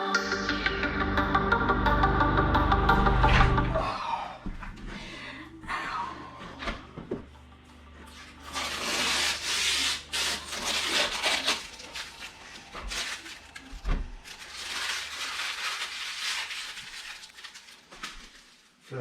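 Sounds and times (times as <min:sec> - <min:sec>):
rubbing and scraping on a surface: 0:08.0 - 0:18.9.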